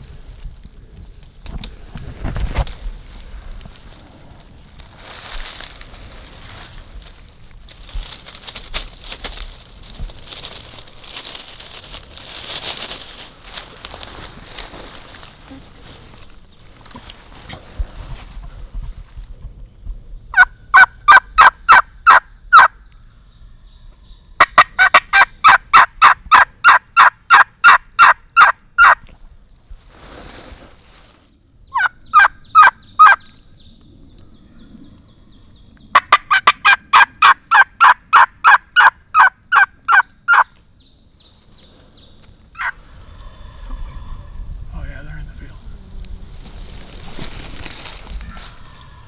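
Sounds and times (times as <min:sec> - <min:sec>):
turkey hen yelping: 0:20.4 - 0:22.7, 0:24.4 - 0:29.0, 0:31.8 - 0:33.2, 0:36.0 - 0:40.5, 0:42.6 - 0:42.8.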